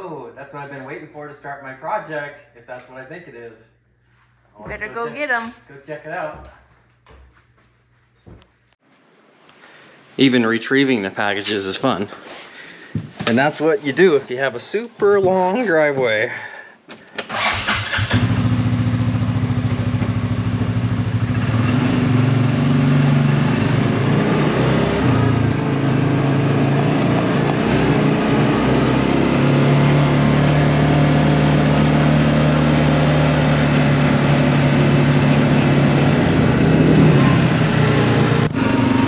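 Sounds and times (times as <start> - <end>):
small petrol engine running: 30.4 - 39.0.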